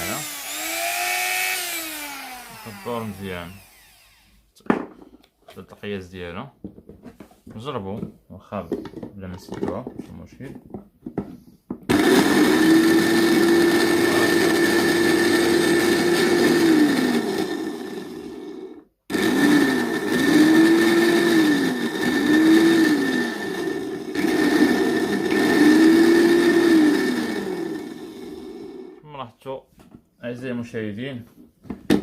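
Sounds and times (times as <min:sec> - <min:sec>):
blender motor whining: 0:00.0 - 0:04.5, 0:11.9 - 0:29.0.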